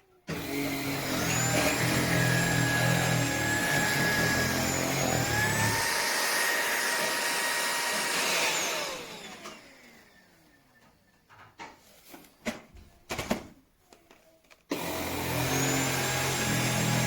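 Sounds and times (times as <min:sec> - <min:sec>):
stick vacuum motor whine: 0:00.3 - 0:10.5, 0:14.7 - 0:17.0.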